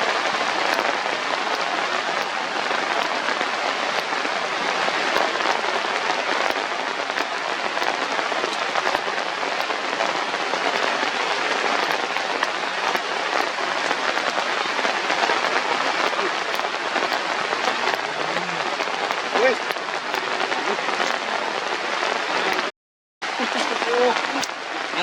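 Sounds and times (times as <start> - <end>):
steady rain falling: 0.0 - 25.0
faint clicks: 0.6 - 3.2, 11.8 - 14.6, 15.2 - 20.3.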